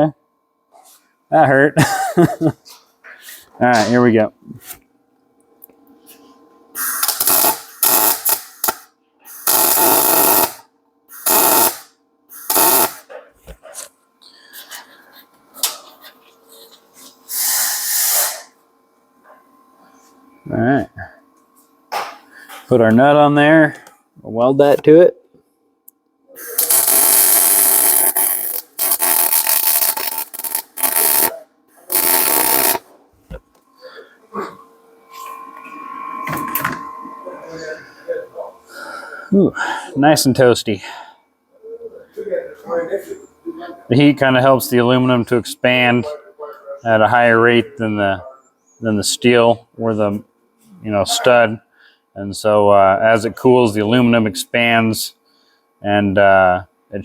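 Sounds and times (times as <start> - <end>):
faint steady hum: 0.0 - 57.0
welder arc crackling: 6.8 - 13.1, 26.4 - 31.3, 31.9 - 32.8.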